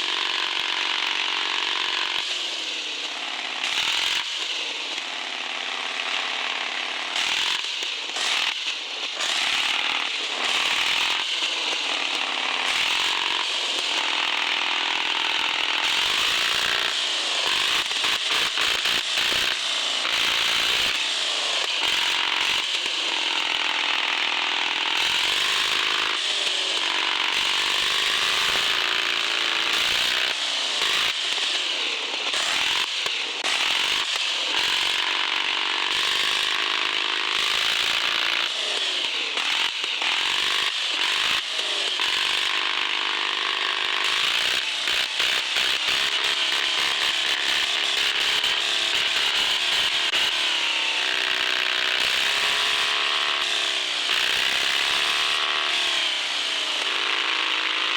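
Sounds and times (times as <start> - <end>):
electric motor whining under load: 34.6 - 57.9.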